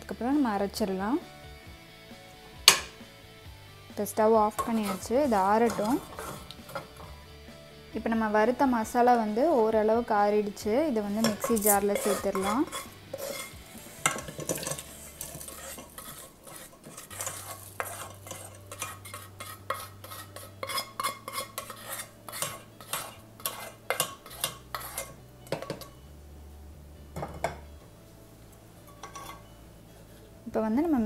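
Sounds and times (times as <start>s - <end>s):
metal spoon scraping a pan: 4.4s - 7.3s, 11.0s - 26.0s, 28.8s - 30.4s.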